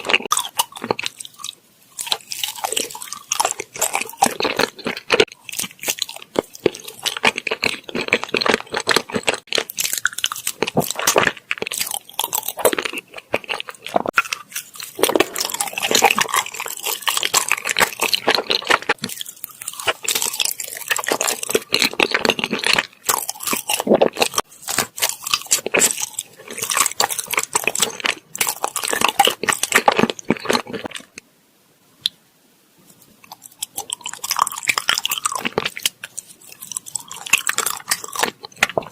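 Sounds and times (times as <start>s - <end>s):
close chewing of rice cakes: 0.0s - 31.2s, 32.9s - 38.9s.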